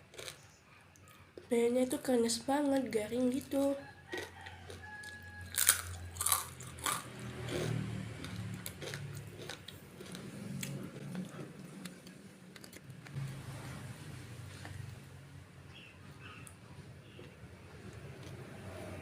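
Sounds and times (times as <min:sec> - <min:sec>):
crunching crispy cracker: 0:00.0 - 0:01.2, 0:04.0 - 0:13.1
chewing: 0:00.0 - 0:01.5, 0:03.4 - 0:12.9.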